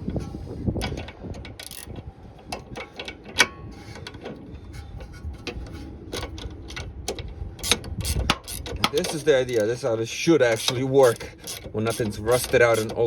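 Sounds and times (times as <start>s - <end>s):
hand tools clicking on metal: 6.2s - 9.8s, 10.5s - 13.0s.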